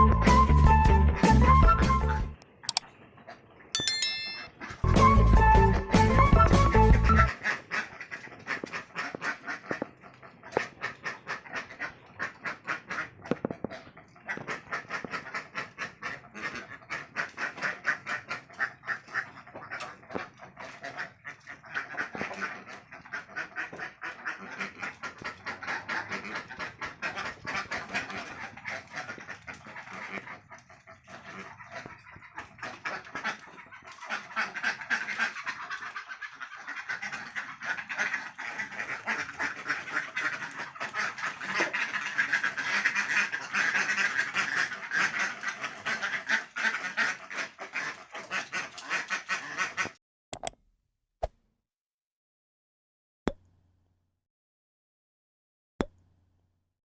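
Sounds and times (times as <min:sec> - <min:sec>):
ducks quacking: 0:07.2 - 0:50.0.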